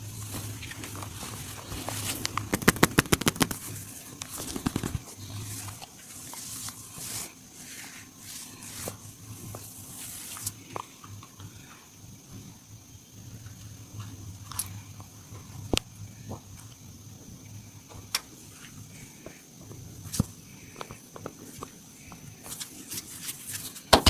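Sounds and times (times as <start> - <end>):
hands rubbing and kneading skin: 0.0 - 10.8
steady low hum: 0.0 - 24.0
sharp clicks: 2.2 - 3.6.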